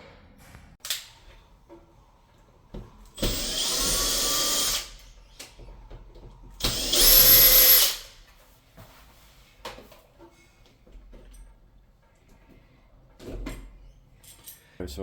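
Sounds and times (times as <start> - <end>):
cordless drill running: 3.2 - 5.1, 6.6 - 8.2.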